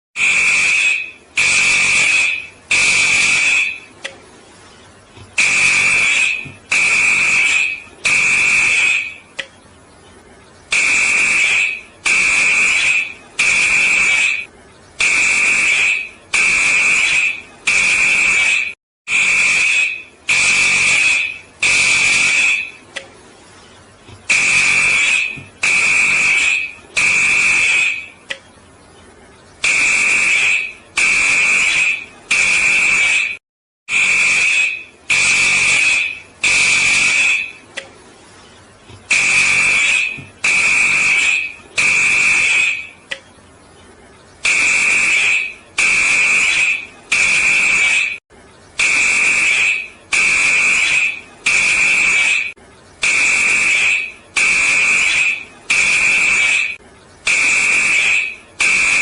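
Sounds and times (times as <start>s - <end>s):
fire alarm beeps: 5.4s - 9.4s, 10.7s - 22.8s, 48.8s - 59.0s.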